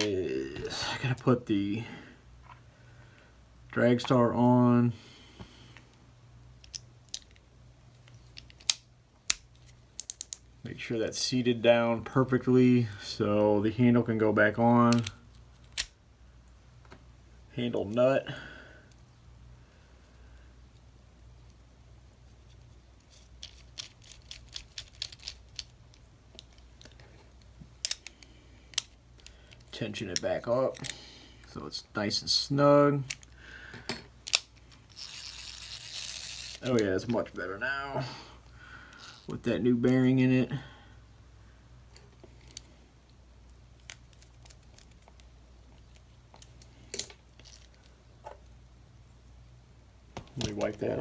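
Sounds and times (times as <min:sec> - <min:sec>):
fishing reel clicks and handling: 0:34.2 - 0:36.8.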